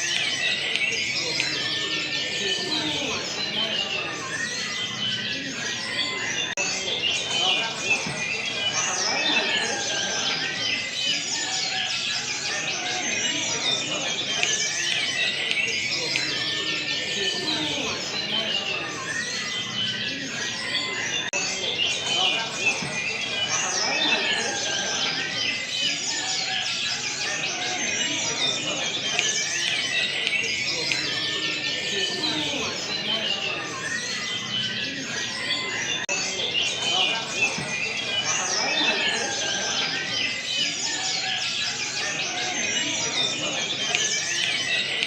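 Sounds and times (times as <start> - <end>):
chorus of birds singing: 0.0 - 45.0.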